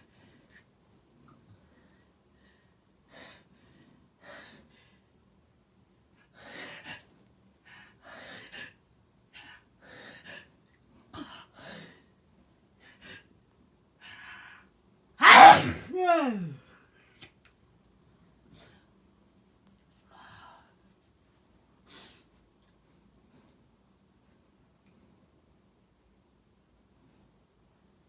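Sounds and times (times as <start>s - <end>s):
person gasping in-breaths: 15.2s - 16.5s
person sneezing loudly: 15.2s - 16.6s.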